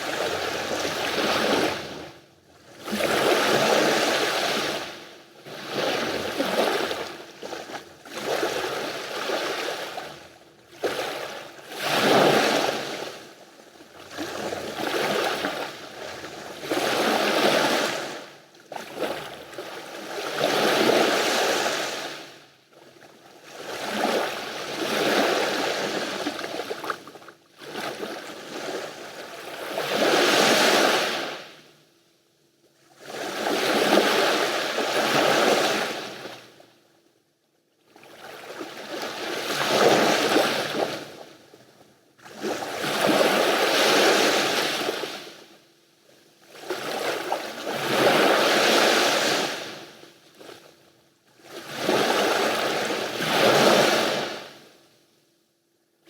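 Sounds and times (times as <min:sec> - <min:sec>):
small waves washing onto shore: 0:23.4 - 0:31.4.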